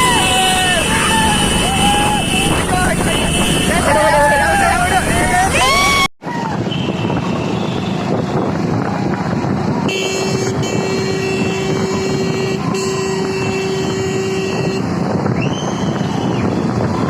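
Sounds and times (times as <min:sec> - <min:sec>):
horn long blast: 0:00.0 - 0:05.8, 0:09.9 - 0:14.9
vehicle traffic: 0:00.0 - 0:17.0.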